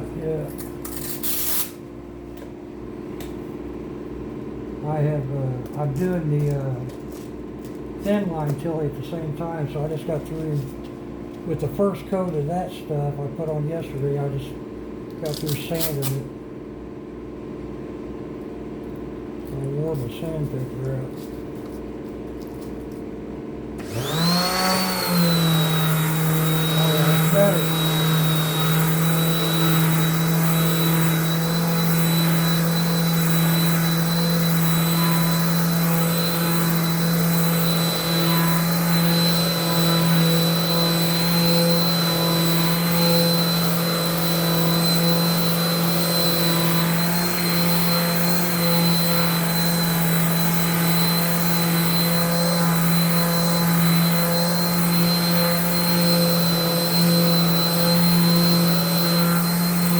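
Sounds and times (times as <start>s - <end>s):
electric sander running: 23.8s - 59.9s.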